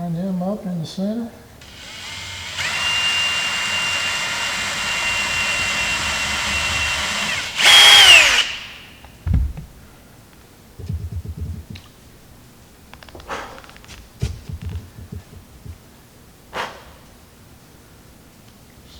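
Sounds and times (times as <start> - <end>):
cordless drill whining: 1.6 - 9.0
low thump: 9.2 - 9.8, 14.2 - 15.8.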